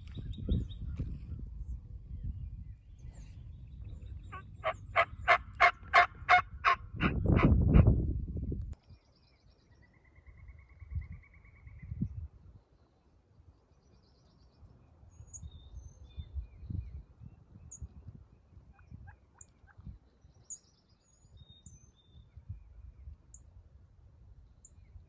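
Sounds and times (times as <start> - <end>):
low rumble on microphone: 0.0 - 5.3, 6.2 - 8.8
songbirds chirping and trilling: 0.0 - 7.7, 8.8 - 23.6, 24.2 - 25.0.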